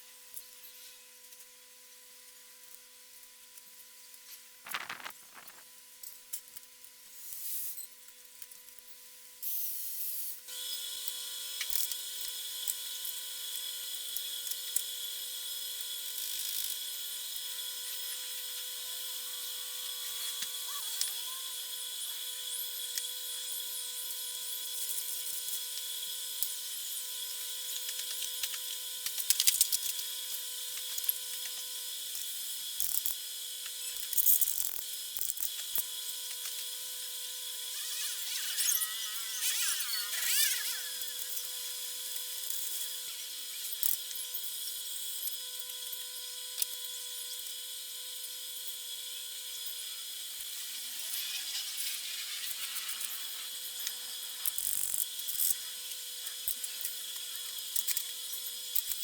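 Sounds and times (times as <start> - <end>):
power tool whining: 36.2 - 43.7.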